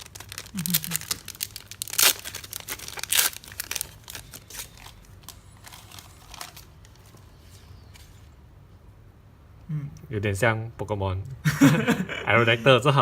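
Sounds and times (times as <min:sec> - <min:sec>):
foil wrapper crinkling and tearing: 0:00.0 - 0:07.6.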